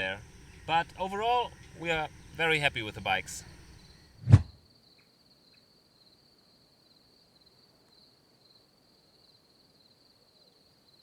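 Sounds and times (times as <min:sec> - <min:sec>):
crickets chirring: 0:00.0 - 0:11.0.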